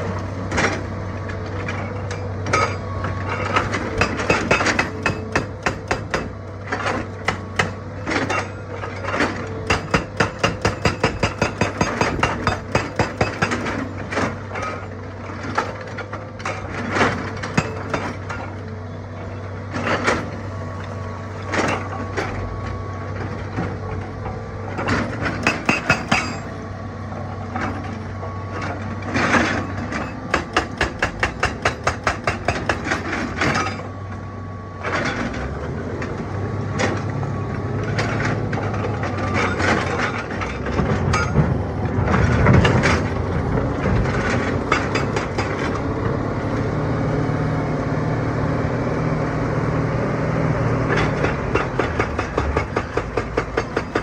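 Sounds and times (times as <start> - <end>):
diesel engine drone: 0.0 - 54.0
hydraulic breaker hammering stone: 1.6 - 18.6, 24.7 - 26.6, 29.1 - 33.9, 43.9 - 45.8, 50.9 - 54.0.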